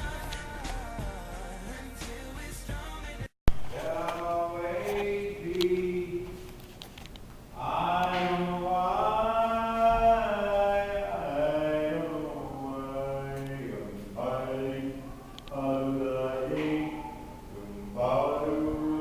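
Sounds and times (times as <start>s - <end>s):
chant-like singing: 7.6s - 19.0s.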